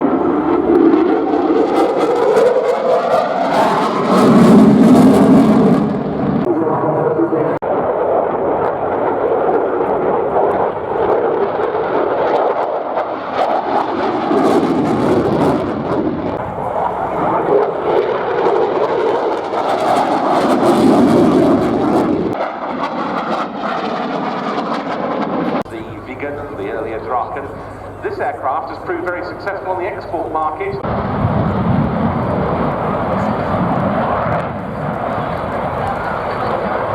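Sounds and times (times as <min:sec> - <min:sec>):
fighter jet engine roar: 0:00.0 - 0:36.9.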